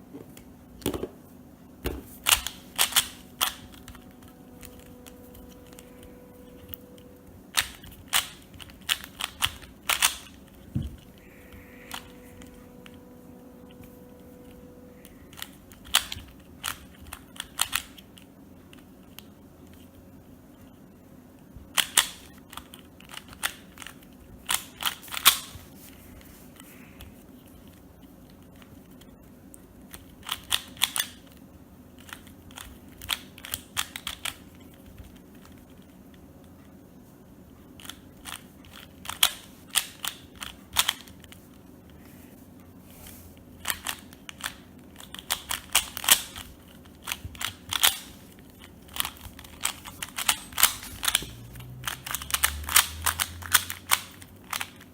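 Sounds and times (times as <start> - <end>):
speed cube clicking: 2.2 - 4.0, 7.5 - 13.0, 15.3 - 19.8, 21.7 - 25.6, 29.9 - 31.4, 32.0 - 35.7, 37.8 - 41.3, 43.6 - 54.9.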